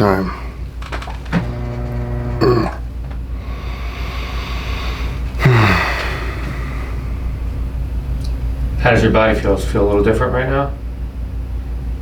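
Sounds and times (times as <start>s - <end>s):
man groaning: 0.0s - 0.6s, 2.4s - 2.8s, 5.4s - 7.0s
man humming: 0.0s - 0.6s, 2.1s - 2.9s, 3.5s - 7.2s.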